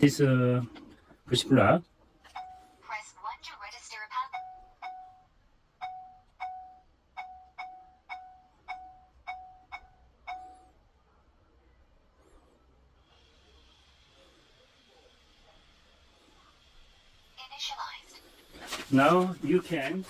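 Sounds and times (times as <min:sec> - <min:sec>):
keypad beeps: 0:02.3 - 0:02.7, 0:04.3 - 0:10.7.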